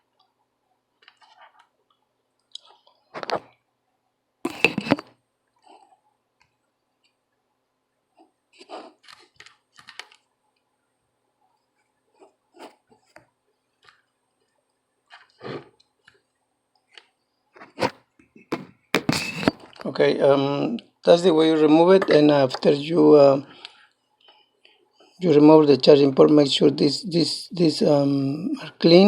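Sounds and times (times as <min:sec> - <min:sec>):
loud knocks: 0:18.5 - 0:19.5.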